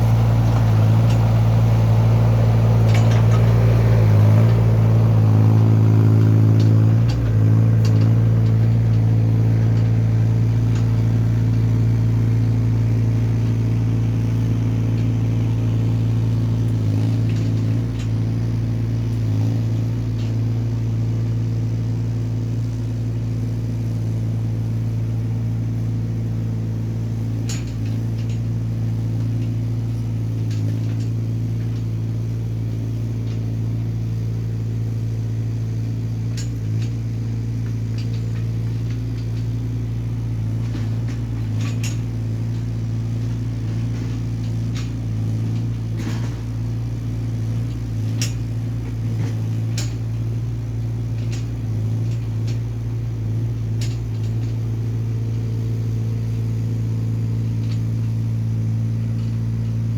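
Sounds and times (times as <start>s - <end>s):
excavator engine running: 0.0s - 59.9s
sharp clicks and knocks: 2.8s - 3.7s.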